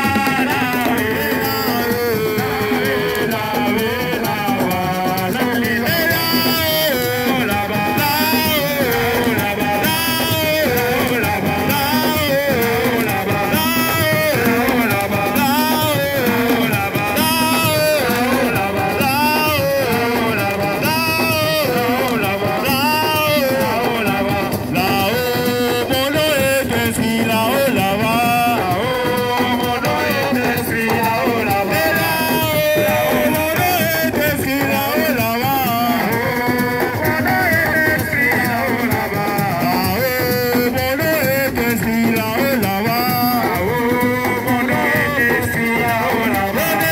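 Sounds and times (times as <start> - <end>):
person singing: 0.0 - 46.9.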